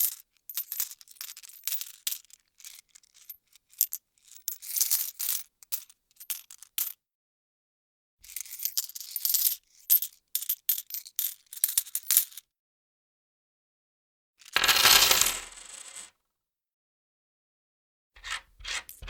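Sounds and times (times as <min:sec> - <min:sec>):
metal coins clinking: 0:14.6 - 0:16.1.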